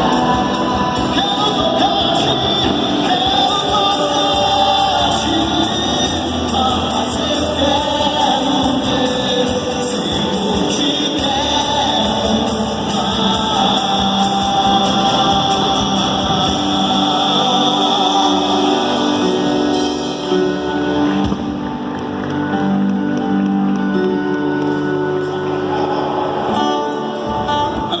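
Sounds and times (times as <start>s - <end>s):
person singing: 0.0s - 21.2s
live band music: 0.0s - 28.0s.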